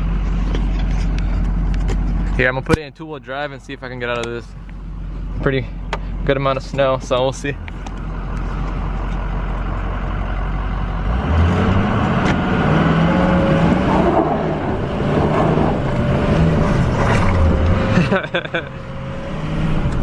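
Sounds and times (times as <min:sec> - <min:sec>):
diesel truck engine revving: 0:03.4 - 0:20.0
steady whine: 0:11.6 - 0:20.0.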